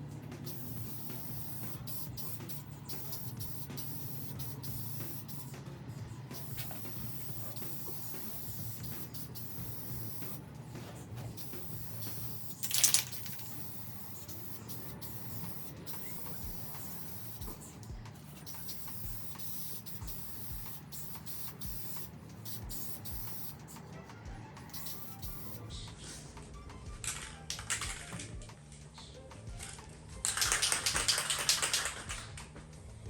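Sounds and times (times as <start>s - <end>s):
pressure washer spraying water: 0.0s - 25.7s.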